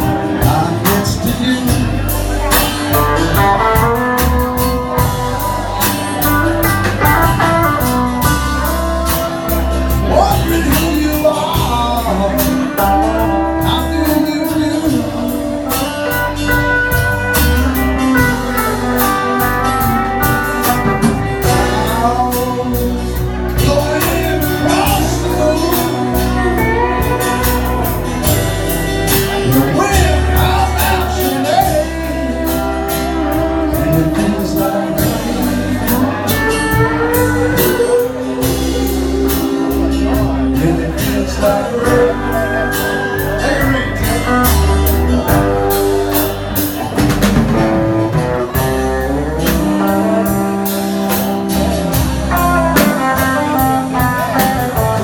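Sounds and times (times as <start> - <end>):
bass guitar: 0.0 - 55.0
electric guitar: 0.0 - 55.0
person singing: 0.0 - 55.0
drum beat: 44.5 - 55.0.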